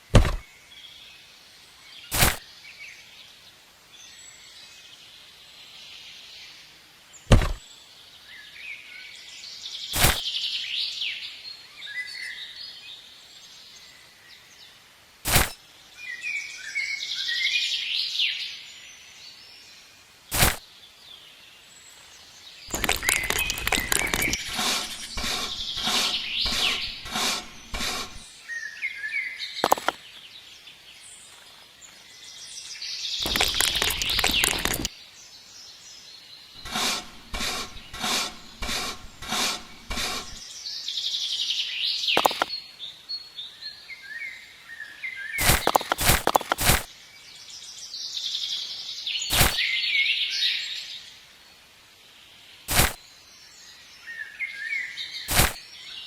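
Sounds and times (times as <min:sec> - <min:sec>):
sharp knocks: 0:00.1 - 0:00.4, 0:07.3 - 0:07.6
birds chirping and singing: 0:22.7 - 0:28.4, 0:36.6 - 0:40.6.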